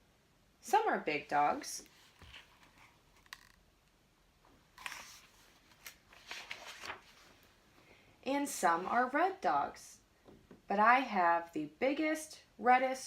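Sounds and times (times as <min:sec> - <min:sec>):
book pages turning: 0:01.9 - 0:03.6, 0:04.7 - 0:07.6.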